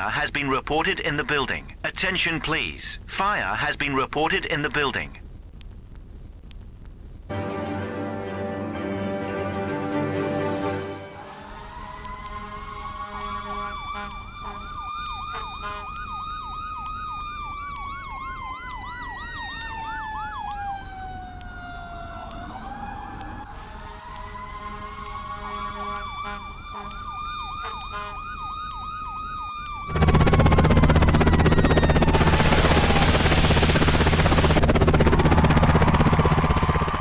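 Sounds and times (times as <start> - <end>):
siren wailing: 11.0 - 37.0
siren yelp: 11.1 - 37.0
loud burst of noise: 29.9 - 37.0
low hum: 29.9 - 37.0.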